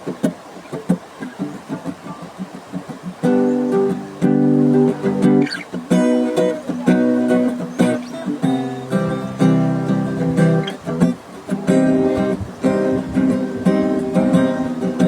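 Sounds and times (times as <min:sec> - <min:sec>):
guitar strumming chords: 0:00.0 - 0:15.0.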